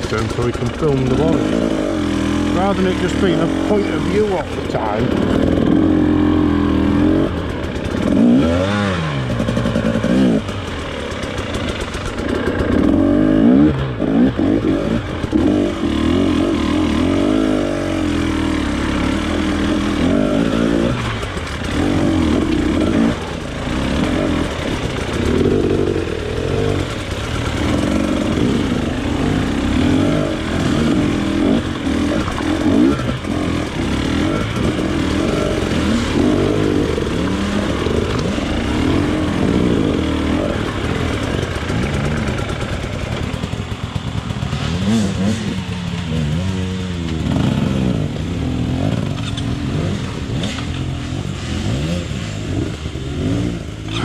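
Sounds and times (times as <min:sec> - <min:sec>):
motorcycle engine revving: 0:00.0 - 0:54.0.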